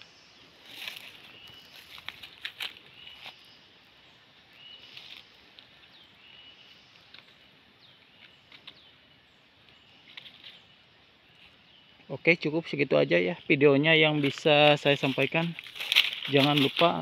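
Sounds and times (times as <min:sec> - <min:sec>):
birds whistling and chirping: 0:00.0 - 0:02.1, 0:02.8 - 0:12.4
sharp crackles: 0:14.0 - 0:17.0.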